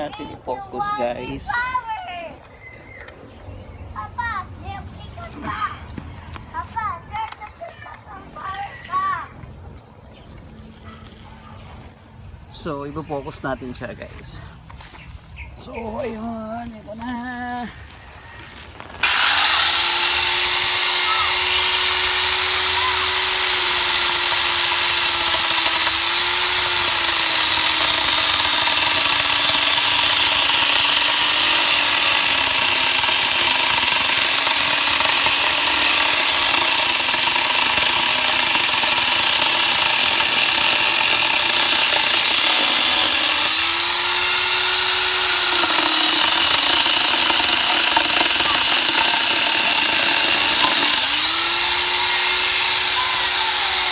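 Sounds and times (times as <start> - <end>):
angle grinder sawing wood: 17.7 - 53.9.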